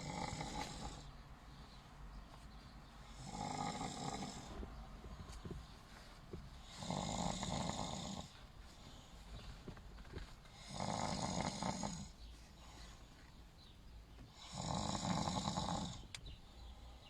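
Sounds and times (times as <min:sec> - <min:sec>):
man snoring: 0:00.0 - 0:01.1, 0:03.1 - 0:04.6, 0:06.6 - 0:08.3, 0:10.5 - 0:12.1, 0:14.4 - 0:16.1.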